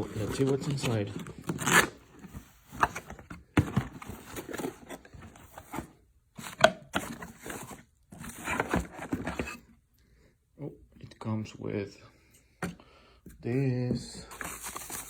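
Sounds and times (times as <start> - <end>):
cardboard rustling and scraping: 0.0 - 9.8, 13.4 - 15.0.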